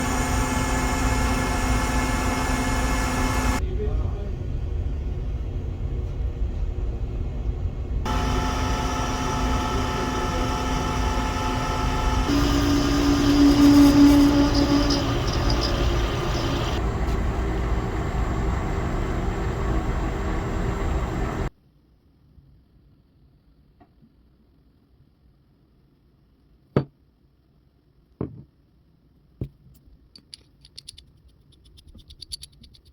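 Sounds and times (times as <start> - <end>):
lathe running with low rumble: 0.0 - 3.6, 7.1 - 21.5
multi-tone whine: 0.0 - 3.6, 8.1 - 21.5.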